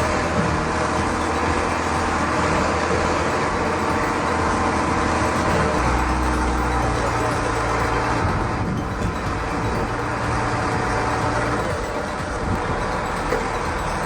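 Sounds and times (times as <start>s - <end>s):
heavy vehicle engine running: 0.0s - 14.0s.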